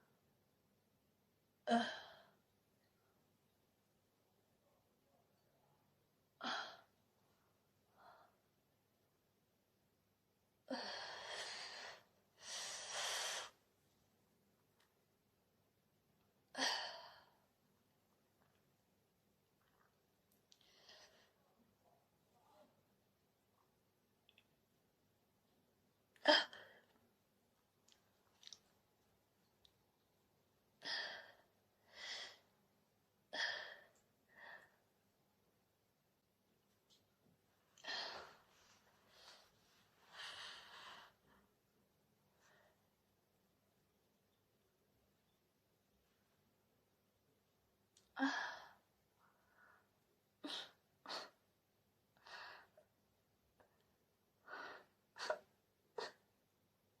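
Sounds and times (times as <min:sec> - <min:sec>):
close breathing: 0:10.7 - 0:13.6, 0:37.8 - 0:41.5.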